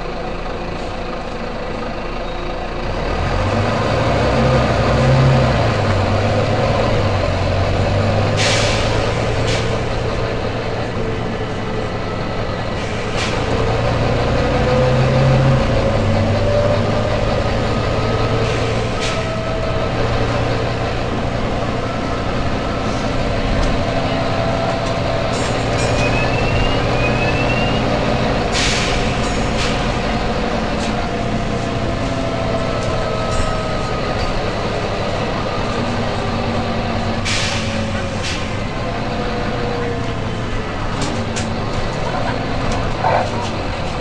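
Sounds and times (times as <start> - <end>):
bus diesel engine droning: 0.0 - 44.0
air brakes hissing: 8.3 - 10.4, 12.6 - 14.0, 18.0 - 20.6, 21.2 - 30.0, 37.0 - 38.7.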